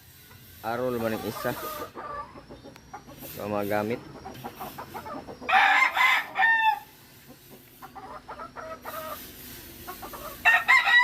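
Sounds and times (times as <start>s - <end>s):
rooster clucking softly: 1.1s - 3.4s, 4.0s - 6.4s, 7.2s - 10.4s
rooster crowing: 5.4s - 7.0s, 10.3s - 11.0s.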